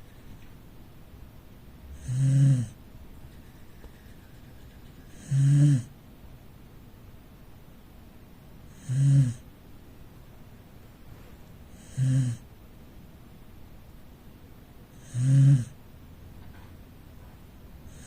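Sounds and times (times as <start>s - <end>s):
dog snoring: 1.9s - 2.8s, 5.0s - 5.9s, 8.7s - 9.4s, 11.7s - 12.5s, 14.9s - 15.8s.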